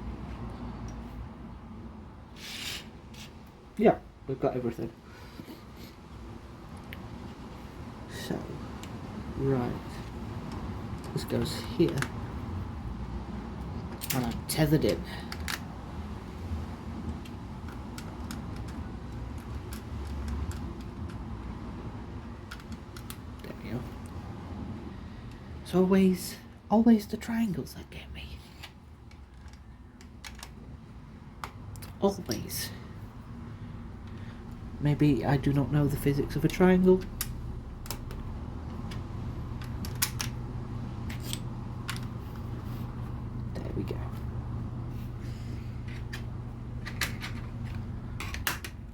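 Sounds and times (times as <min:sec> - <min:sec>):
steady low hum: 0:00.0 - 0:48.9
low hum: 0:32.7 - 0:48.9
plastic bricks clicking together: 0:39.6 - 0:40.4.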